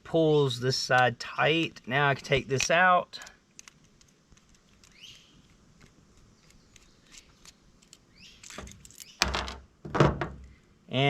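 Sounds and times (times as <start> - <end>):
small metal parts clicking: 1.8 - 9.3
metal parts scraping: 6.2 - 9.2.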